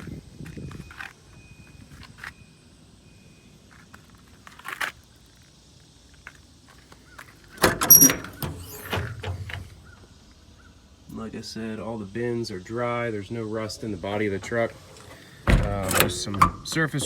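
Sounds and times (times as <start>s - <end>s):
latch clicks: 7.4s - 10.1s, 14.4s - 17.0s
metal door clunks and rattle: 7.5s - 10.3s, 14.3s - 17.0s
short sharp squeaks: 7.6s - 10.2s.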